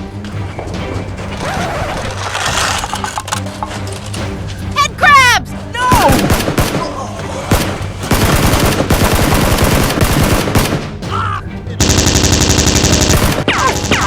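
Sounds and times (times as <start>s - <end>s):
automatic gunfire: 5.9s - 6.8s, 7.5s - 10.9s, 11.8s - 14.0s.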